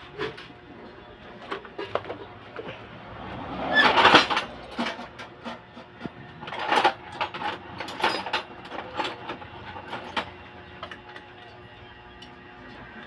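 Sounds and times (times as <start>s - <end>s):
metal scraping: 0.0s - 10.2s.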